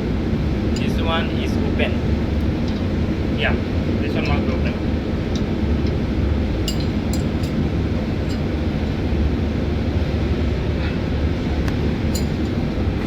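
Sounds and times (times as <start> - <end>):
low machinery rumble: 0.0 - 13.0
metallic clinks of tools: 6.7 - 7.6, 12.1 - 12.6.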